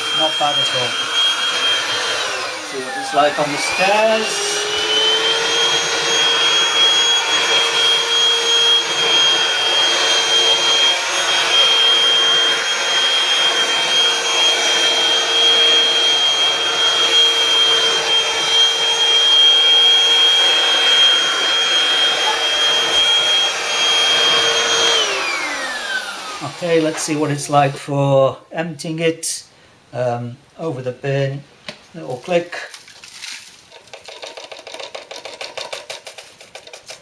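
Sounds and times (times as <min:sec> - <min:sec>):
vacuum cleaner running: 0:00.0 - 0:27.9.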